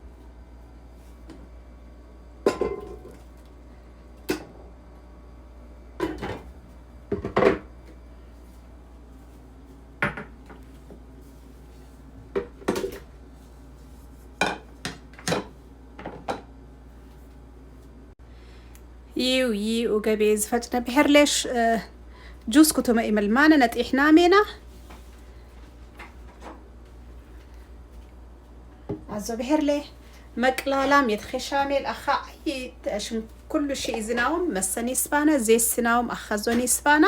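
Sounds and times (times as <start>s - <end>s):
kitchen utensils clattering: 2.5s - 3.2s.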